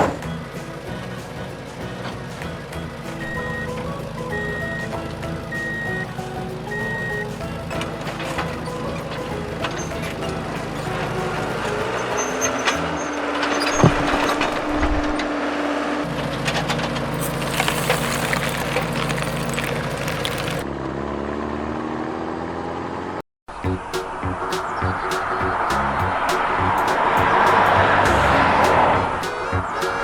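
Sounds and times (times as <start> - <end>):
metal clanks and knocks: 0.0 - 4.2, 7.3 - 15.4
heavy machine engines running: 0.0 - 21.5, 23.6 - 30.0.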